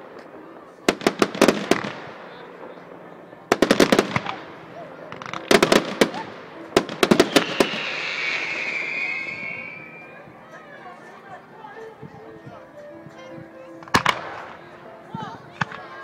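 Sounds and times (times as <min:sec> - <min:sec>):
fireworks crackling bangs: 0:00.0 - 0:10.1, 0:13.8 - 0:14.8.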